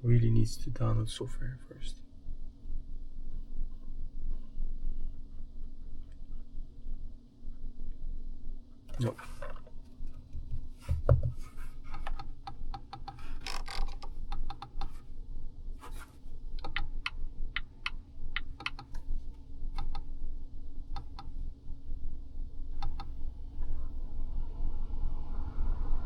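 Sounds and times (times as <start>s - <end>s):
low steady rumble: 0.0s - 26.0s
dull thump: 10.4s - 11.8s
light irregular clicks and taps: 15.8s - 20.1s, 22.8s - 23.8s.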